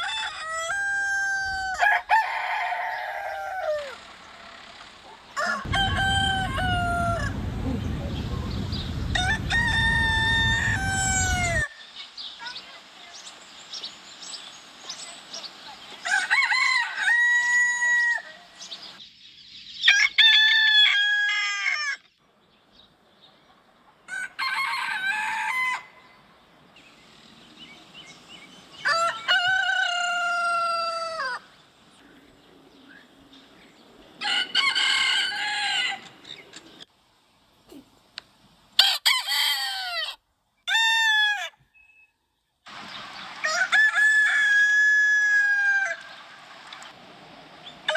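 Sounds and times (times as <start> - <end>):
roosters crowing: 0.0 - 11.7, 15.9 - 19.0, 19.8 - 22.0, 24.1 - 36.8, 38.8 - 41.6, 43.4 - 46.2.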